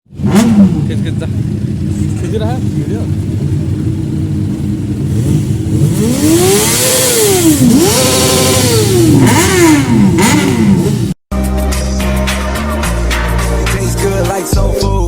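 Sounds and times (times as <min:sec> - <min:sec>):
motorcycle engine idling and revving: 0:00.0 - 0:11.2.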